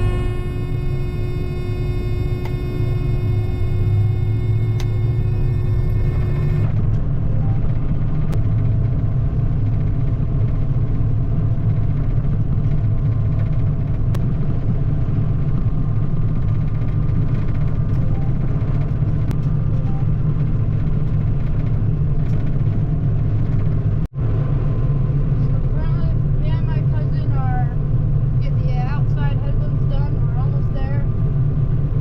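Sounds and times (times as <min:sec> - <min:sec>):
ringing tones: 0:00.0 - 0:06.7
combine harvester rumbling: 0:00.0 - 0:32.0.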